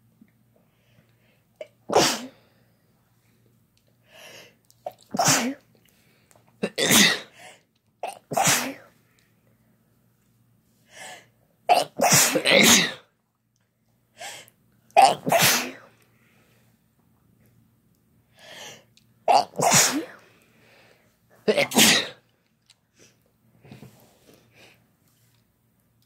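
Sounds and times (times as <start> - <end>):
person sneezing: 1.9 - 2.4, 5.1 - 5.6, 6.6 - 7.4, 8.1 - 8.9, 11.7 - 13.1, 15.0 - 15.9, 19.3 - 20.2, 21.5 - 22.2.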